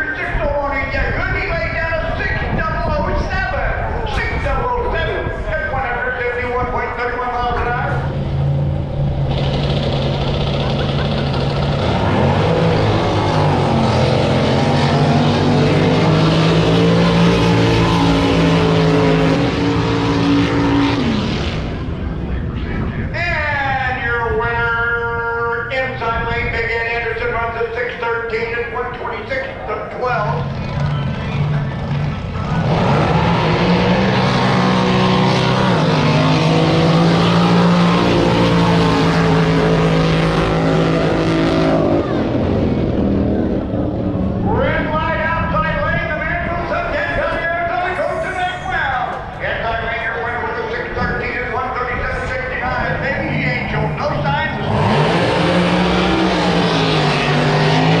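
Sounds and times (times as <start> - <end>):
racing engine running hard: 7.3 - 23.2, 29.2 - 58.0.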